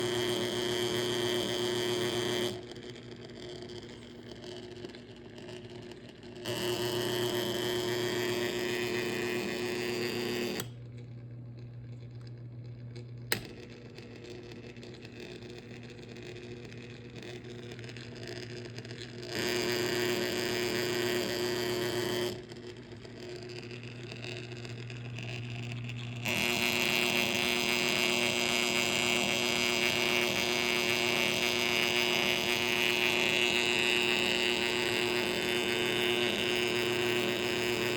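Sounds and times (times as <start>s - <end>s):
motor humming: 23.6s - 37.9s.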